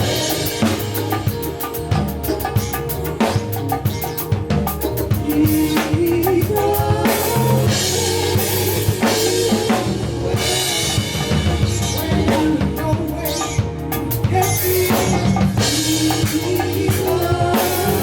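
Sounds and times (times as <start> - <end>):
band playing live: 0.0 - 18.0.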